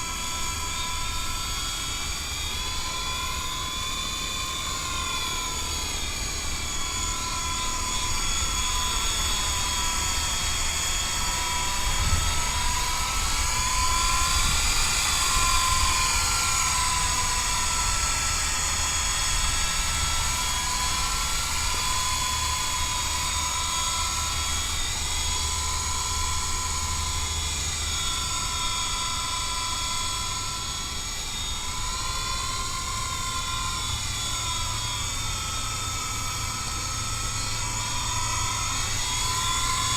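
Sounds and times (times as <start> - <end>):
toy helicopter rotor whine: 0.0 - 39.9.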